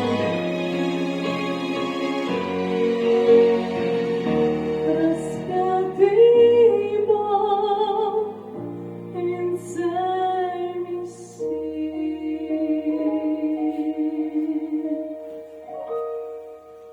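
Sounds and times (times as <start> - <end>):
sustained accompaniment chords: 0.0 - 7.0
woman singing: 4.8 - 15.4.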